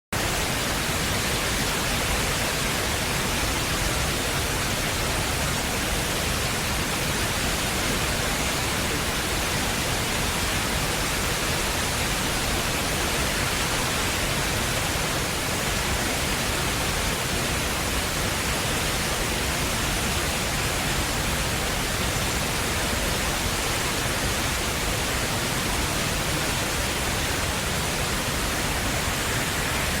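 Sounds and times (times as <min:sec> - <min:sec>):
indoor waterfall rushing: 0:00.2 - 0:30.0.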